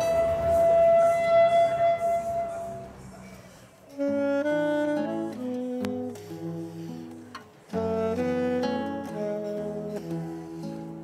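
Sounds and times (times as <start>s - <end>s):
instrumental melody of held notes: 0.0s - 3.3s, 3.9s - 11.0s.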